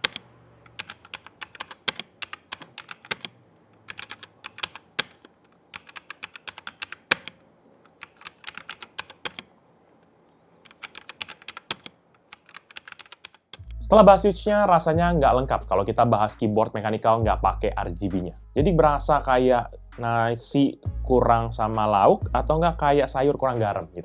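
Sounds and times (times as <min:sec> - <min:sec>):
mechanical keyboard key clicks: 0:00.0 - 0:09.5, 0:10.6 - 0:13.6.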